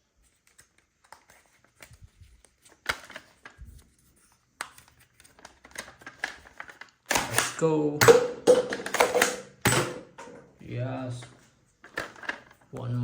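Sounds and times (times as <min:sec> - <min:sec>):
plastic parts clicking and tapping: 0:02.6 - 0:03.6, 0:04.6 - 0:10.5, 0:11.2 - 0:13.0.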